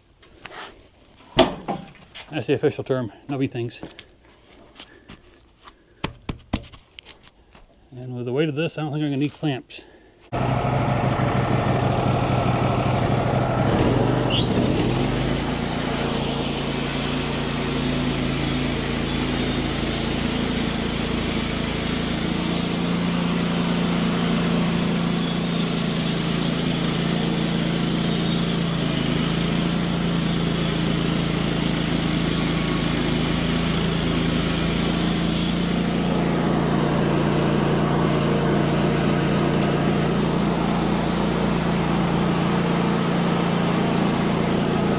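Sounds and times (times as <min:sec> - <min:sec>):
sawmill engine running: 0:10.3 - 0:44.9
band blade cutting log: 0:12.1 - 0:44.9.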